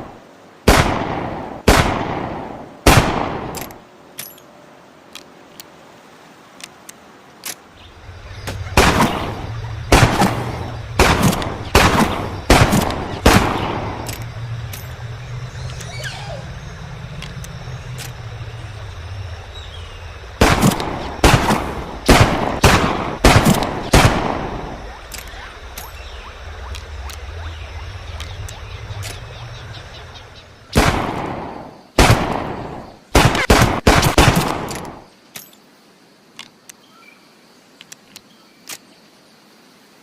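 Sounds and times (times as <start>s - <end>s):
steady low rumble: 7.8s - 32.9s.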